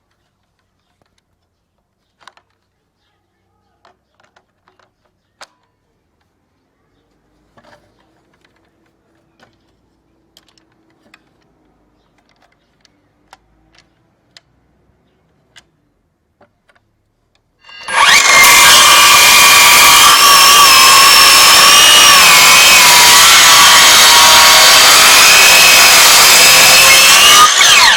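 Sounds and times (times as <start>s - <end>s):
faint clicks and taps: 16.4s - 17.5s
circular saw whining: 17.6s - 27.9s.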